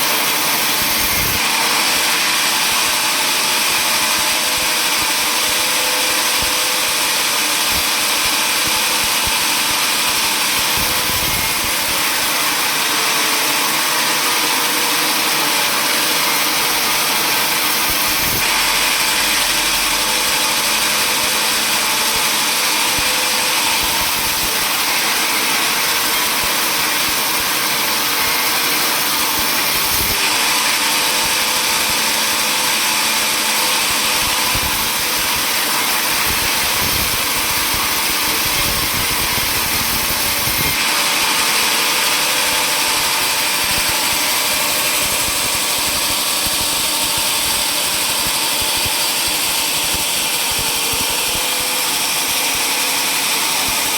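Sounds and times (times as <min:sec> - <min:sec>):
sawmill machinery running: 0:00.0 - 0:53.9
thin high whine: 0:06.2 - 0:32.8.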